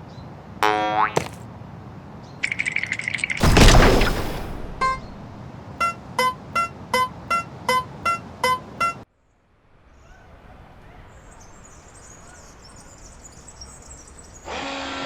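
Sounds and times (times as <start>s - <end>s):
loud noisy burst: 3.4s - 5.3s.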